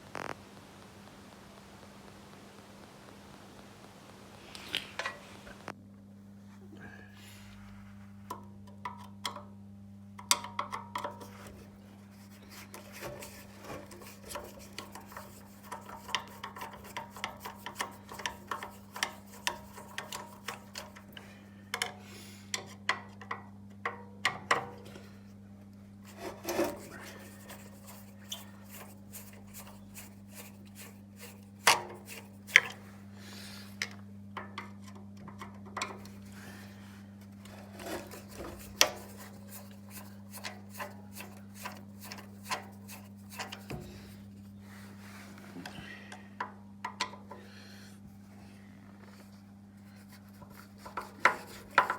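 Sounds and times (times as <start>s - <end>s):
low electrical hum: 0.0s - 51.9s
tools clicking and tapping: 8.4s - 9.5s, 10.2s - 11.4s, 12.7s - 24.7s, 26.1s - 32.8s, 37.8s - 43.9s, 50.8s - 51.9s.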